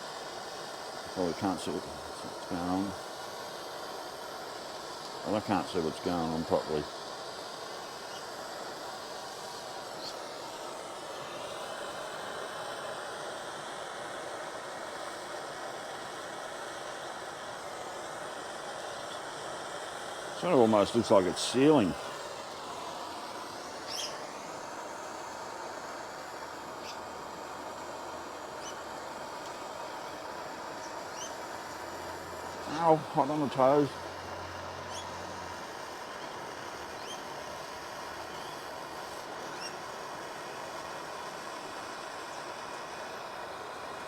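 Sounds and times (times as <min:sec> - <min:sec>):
gas torch flame hissing: 0:00.0 - 0:44.0
short high bird chirps: 0:23.9 - 0:24.2.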